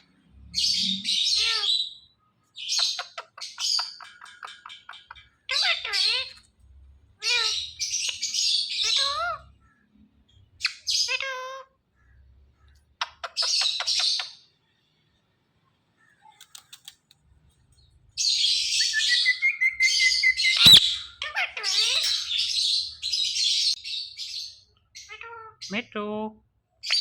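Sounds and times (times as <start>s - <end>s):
parakeet calling: 0.6s - 6.5s, 7.2s - 9.8s, 10.6s - 14.5s, 18.2s - 25.9s.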